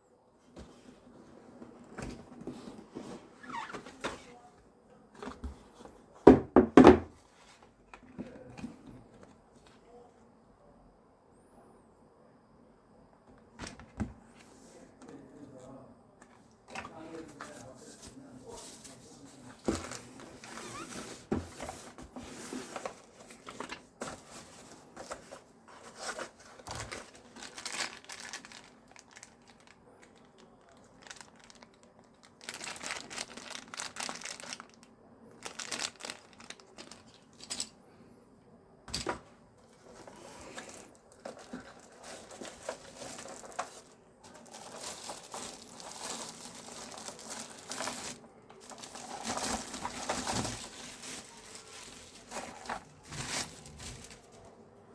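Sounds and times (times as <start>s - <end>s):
plastic and paper crinkling: 13.6s - 37.8s, 38.9s - 54.6s.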